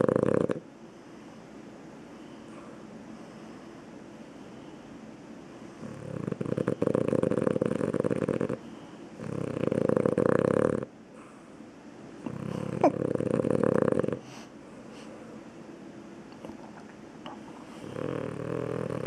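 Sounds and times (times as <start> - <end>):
dog snoring loudly: 0.0 - 0.6, 5.8 - 8.6, 9.2 - 10.9, 12.2 - 14.3, 17.8 - 19.0.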